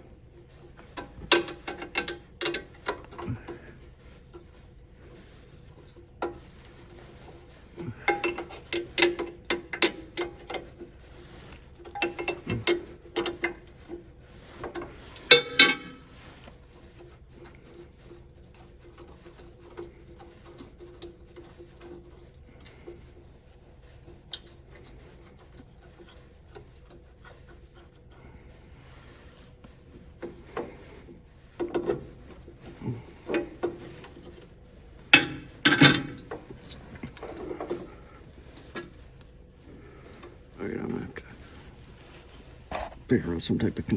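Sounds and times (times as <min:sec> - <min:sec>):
wrench clicking and scraping: 0:11.4 - 0:13.6, 0:19.0 - 0:19.8.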